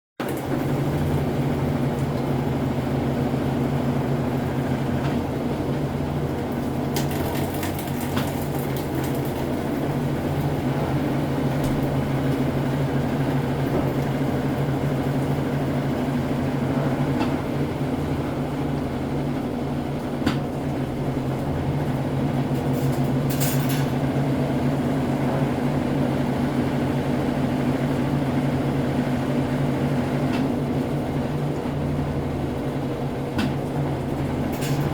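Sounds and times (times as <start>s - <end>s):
washing machine spinning: 0.2s - 34.9s.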